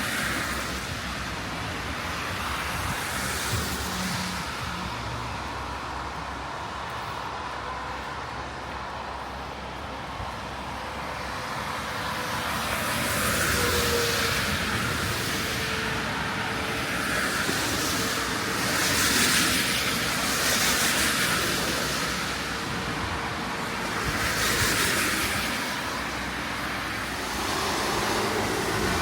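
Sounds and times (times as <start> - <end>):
tyres swishing on wet road: 0.0 - 29.0
steady rain hiss: 12.5 - 29.0.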